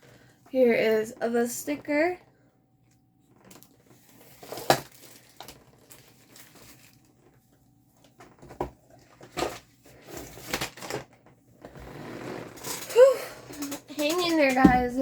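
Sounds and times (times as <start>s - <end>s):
packaging rustling and crinkling: 3.3s - 11.4s.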